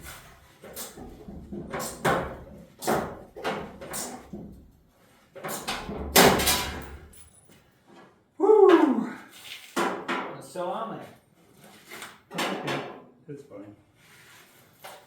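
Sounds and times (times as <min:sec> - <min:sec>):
metal clanks and knocks: 0:05.4 - 0:07.2.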